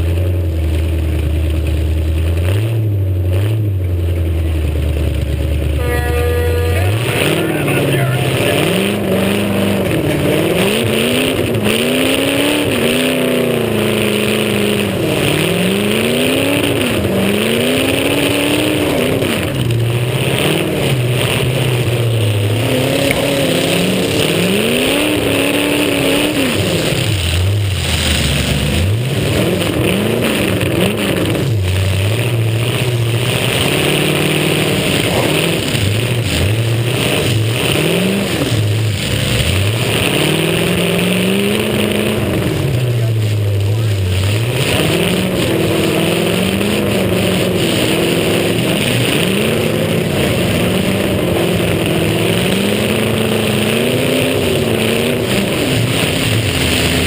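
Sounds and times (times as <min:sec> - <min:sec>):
car engine revving hard: 0:00.0 - 0:57.0.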